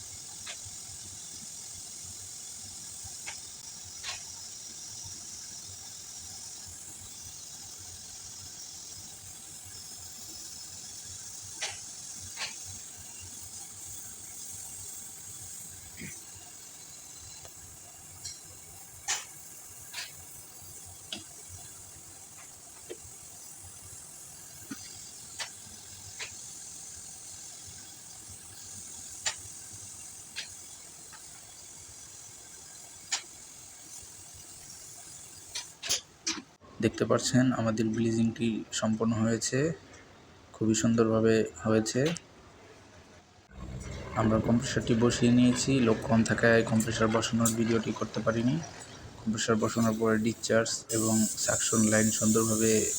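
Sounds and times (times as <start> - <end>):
torch flame hissing: 0.0 - 36.3, 43.4 - 52.9.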